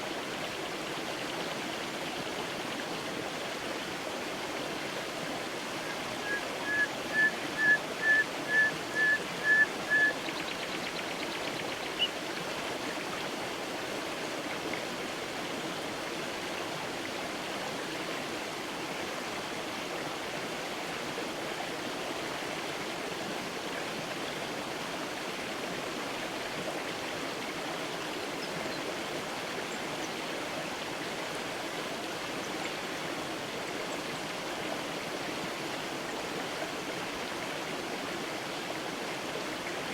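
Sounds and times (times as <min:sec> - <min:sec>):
creek water running: 0:00.0 - 0:39.9
bird calling short notes: 0:05.8 - 0:10.2
high bird chirp: 0:06.2 - 0:10.2.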